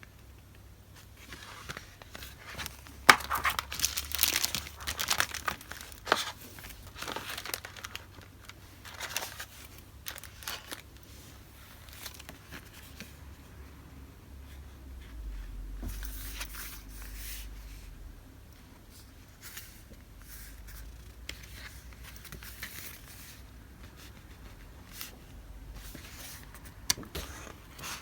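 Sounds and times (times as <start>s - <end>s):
paper rustling and sliding: 1.0s - 13.1s, 15.0s - 17.9s.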